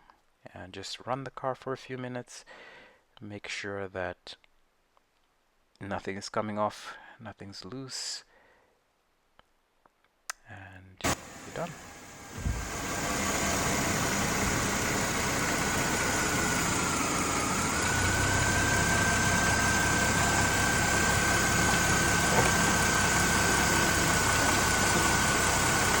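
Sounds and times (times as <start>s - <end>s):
car engine idling: 11.0s - 26.0s
steady high whine: 11.0s - 26.0s.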